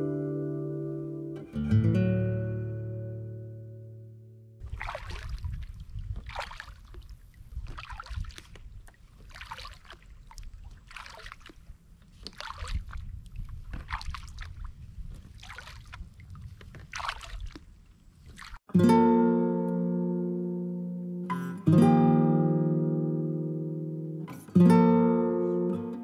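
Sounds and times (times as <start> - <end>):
kayak paddle strokes in water: 4.6 - 18.7.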